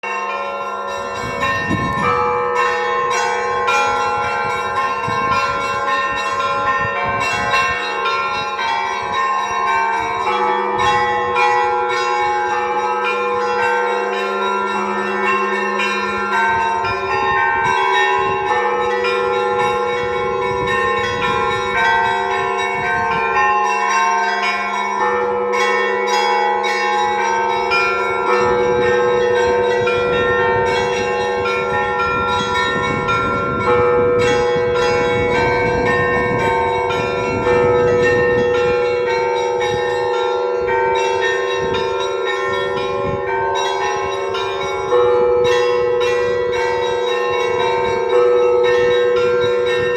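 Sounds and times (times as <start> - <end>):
heavy bell strokes: 0.0 - 49.9
hum of large bells: 0.0 - 49.9.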